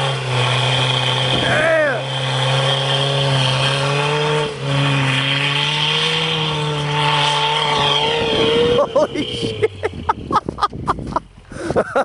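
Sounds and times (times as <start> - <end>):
truck engine at high revs: 0.0 - 12.0.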